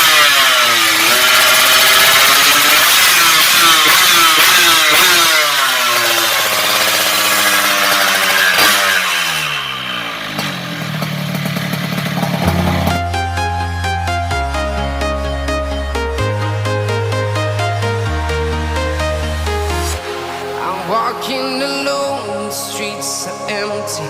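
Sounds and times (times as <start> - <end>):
motorcycle engine revving: 0.0 - 21.0
electronic music: 12.4 - 24.0.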